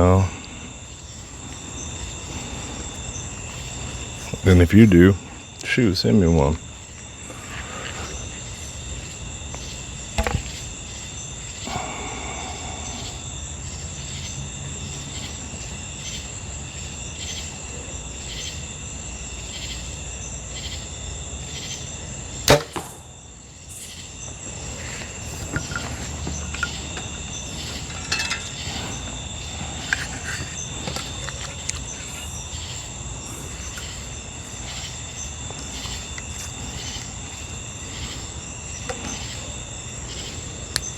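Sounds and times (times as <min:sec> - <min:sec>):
insects chirring: 0:00.0 - 0:40.9
bow string snap: 0:22.5 - 0:23.1.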